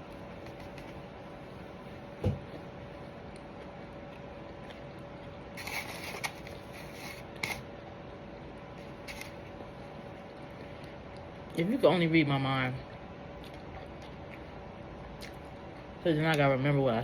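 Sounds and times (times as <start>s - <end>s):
faint steady hum: 0.0s - 17.0s
thump: 2.2s - 2.4s.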